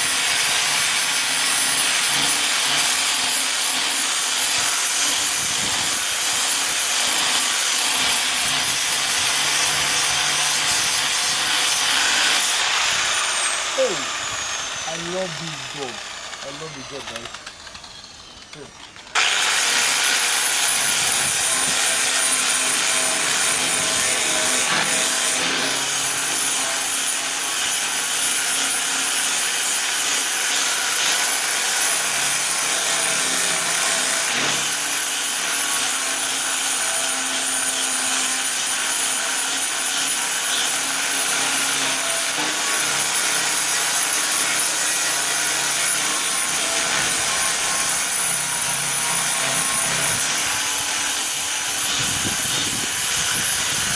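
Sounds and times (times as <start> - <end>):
angle grinder sanding metal: 0.0 - 53.9.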